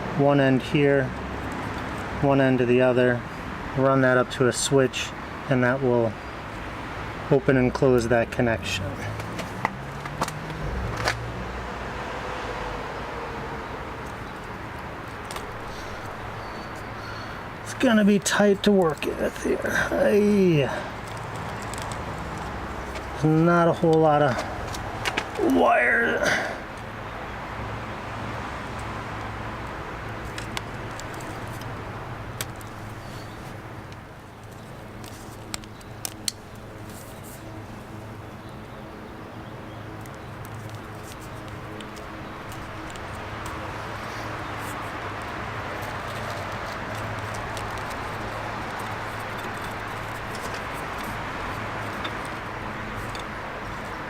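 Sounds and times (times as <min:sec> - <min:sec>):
small sharp clicks and taps: 0:21.0 - 0:23.1, 0:30.3 - 0:31.7, 0:33.9 - 0:36.7, 0:39.9 - 0:43.6, 0:44.7 - 0:54.0.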